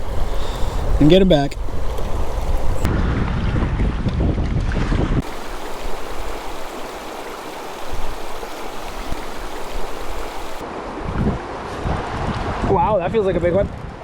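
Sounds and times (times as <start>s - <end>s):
wind rumbling on microphone: 0.0s - 14.0s
rushing river water: 5.2s - 11.0s.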